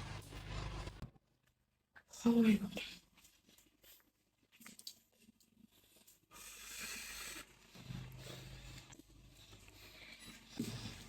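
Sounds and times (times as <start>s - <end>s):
faint rustling and handling: 2.5s - 6.3s.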